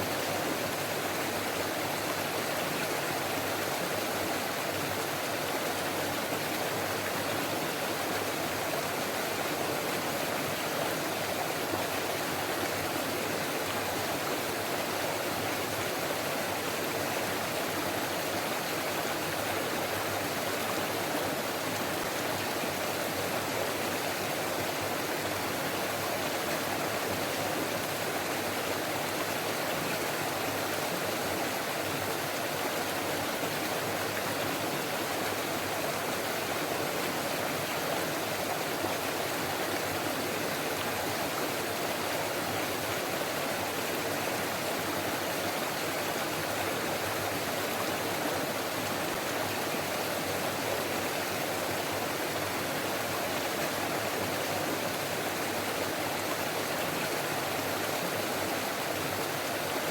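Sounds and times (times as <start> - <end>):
stream babbling over rocks: 0.0 - 59.9.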